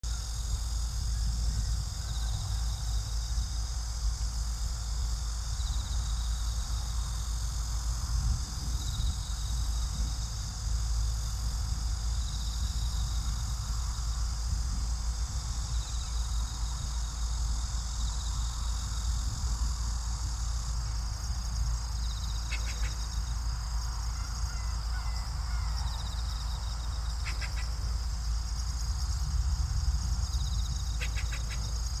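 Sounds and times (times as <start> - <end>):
rapid chattering bird calls: 22.3 - 23.3, 27.0 - 27.8, 30.8 - 32.0
waterbirds calling: 22.4 - 23.1, 27.2 - 27.8, 31.0 - 31.8
low rumble: 27.8 - 31.0.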